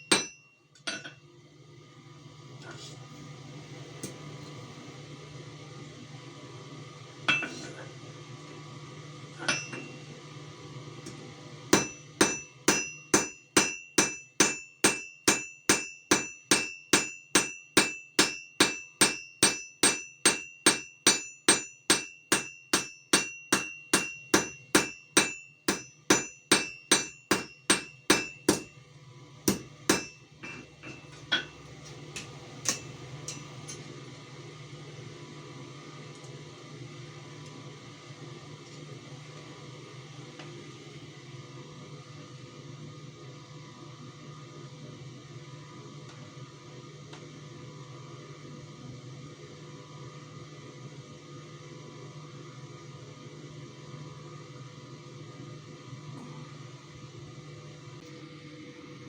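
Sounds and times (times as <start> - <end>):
hammer striking metal on anvil: 0.0 - 1.1, 7.3 - 7.7, 9.4 - 10.0, 11.8 - 28.7, 29.5 - 31.5, 32.2 - 33.8
steady low hum: 0.0 - 59.0.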